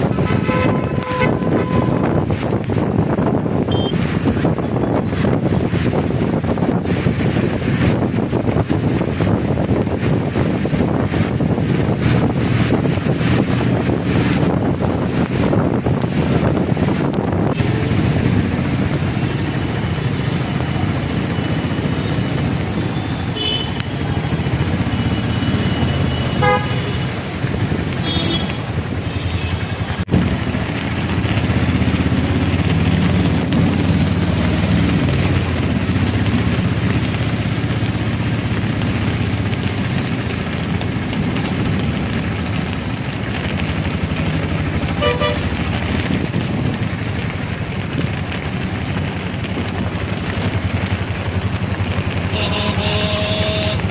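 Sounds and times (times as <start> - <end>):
steady traffic noise: 0.0 - 53.9
motorcycle engines passing: 10.4 - 53.9
car engines passing: 29.7 - 53.9
short horn toots: 45.0 - 45.5, 52.3 - 53.9.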